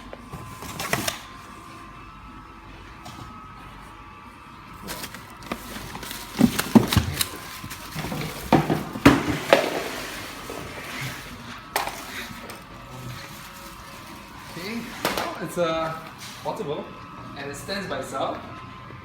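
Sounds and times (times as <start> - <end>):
scooter knocks and clatter: 6.3 - 7.4, 8.0 - 10.0.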